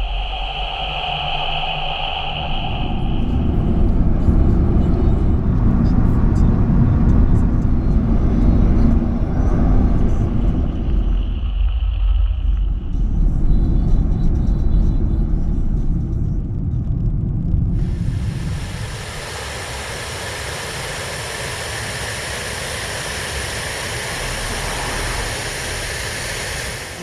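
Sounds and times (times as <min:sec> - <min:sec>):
wind buffeting microphone: 0:00.0 - 0:27.0
steady hiss: 0:17.8 - 0:27.0.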